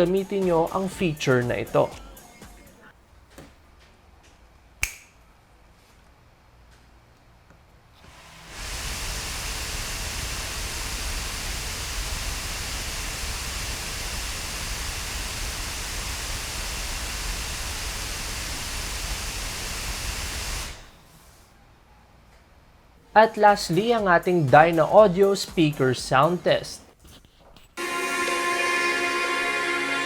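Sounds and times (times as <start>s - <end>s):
laptop cooling fans running: 7.8s - 21.4s.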